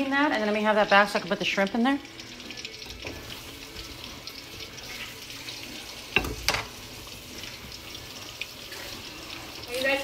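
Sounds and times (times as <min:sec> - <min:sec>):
oil sizzling in a pan: 0:00.0 - 0:10.0
utensil knocks: 0:06.2 - 0:06.8.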